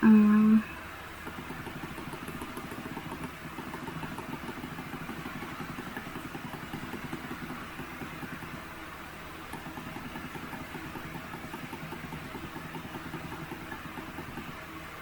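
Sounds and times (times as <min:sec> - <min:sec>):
small engine idling: 0:01.2 - 0:08.7, 0:09.5 - 0:14.6.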